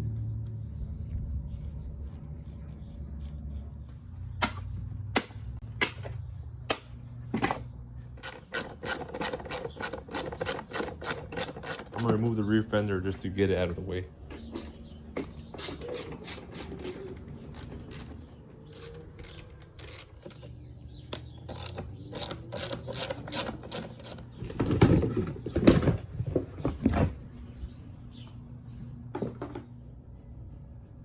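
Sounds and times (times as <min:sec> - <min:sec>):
ratchet wrench clicking: 0:08.2 - 0:12.2, 0:14.6 - 0:24.3
knocks and rattles: 0:18.8 - 0:27.2.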